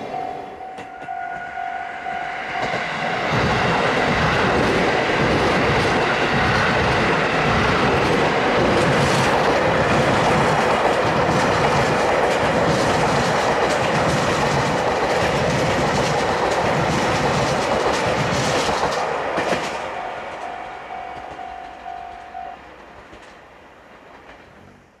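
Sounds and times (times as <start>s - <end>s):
level-crossing warning bell: 0.0s - 7.8s, 17.1s - 23.0s
train wheels clicking over rail joints: 2.5s - 24.7s.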